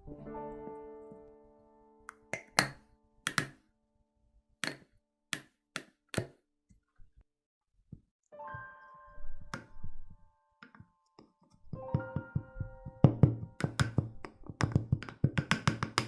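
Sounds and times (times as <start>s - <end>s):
piano music: 0.0s - 4.1s, 8.3s - 15.4s
sharp taps and clicks of objects: 2.1s - 3.6s, 4.6s - 6.4s, 10.6s - 16.0s.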